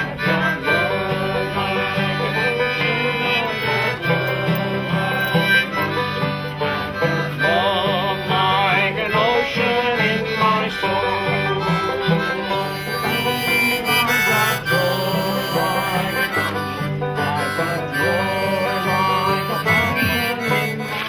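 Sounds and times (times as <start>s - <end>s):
sustained melody notes: 0.0s - 21.0s
stepping bass line: 19.6s - 20.8s.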